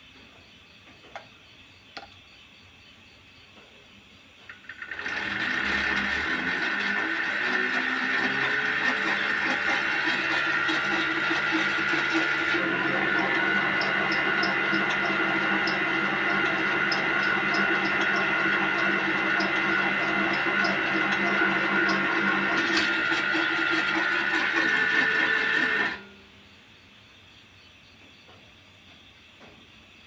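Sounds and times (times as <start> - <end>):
lathe motor whine: 4.5 - 26.1.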